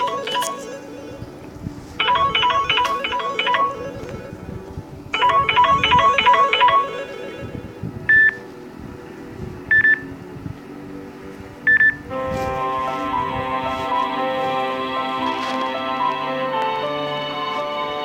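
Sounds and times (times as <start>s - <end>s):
sustained alarm melody: 0.0s - 8.9s, 11.6s - 18.0s
plucked alarm melody: 2.0s - 4.4s, 5.2s - 8.4s.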